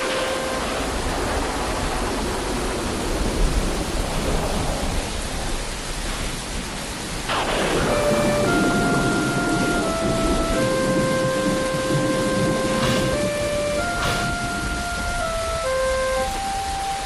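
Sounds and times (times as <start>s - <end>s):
steady tone: 0.0s - 1.0s, 7.7s - 17.0s
heavy rain hiss: 0.0s - 17.0s.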